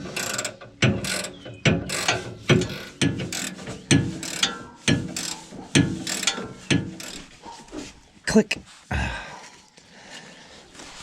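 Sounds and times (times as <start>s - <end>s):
ratchet wrench clicking: 0.0s - 7.3s.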